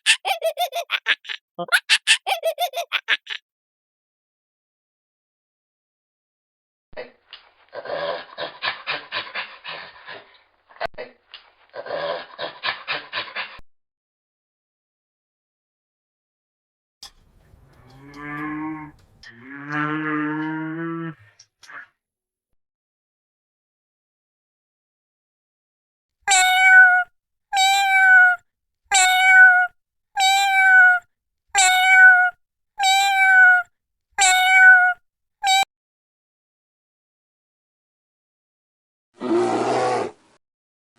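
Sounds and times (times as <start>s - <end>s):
cat meowing: 26.3s - 31.0s, 31.6s - 35.7s.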